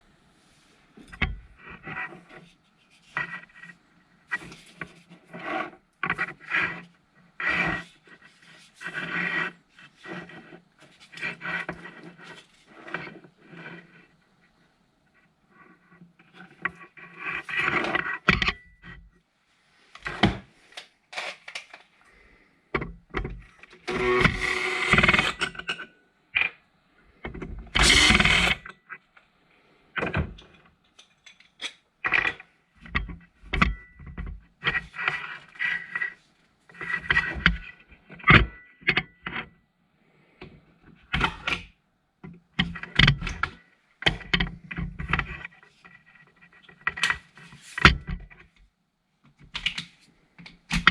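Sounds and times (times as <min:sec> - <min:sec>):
scraping or grinding: 0:23.8 - 0:25.7, 0:27.8 - 0:28.7.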